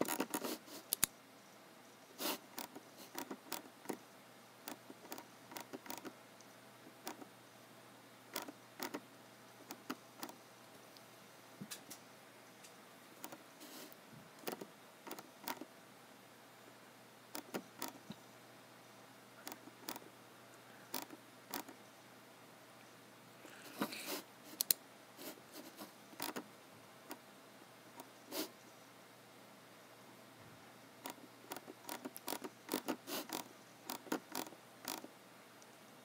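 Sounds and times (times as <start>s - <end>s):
computer mouse and keyboard clicks: 0.0s - 1.1s, 2.4s - 4.0s, 4.7s - 6.2s, 7.0s - 7.3s, 8.3s - 9.0s, 9.6s - 10.4s, 13.2s - 15.7s, 17.4s - 18.1s, 19.4s - 20.1s, 20.9s - 21.8s, 24.5s - 24.8s, 26.2s - 26.4s, 31.0s - 35.1s.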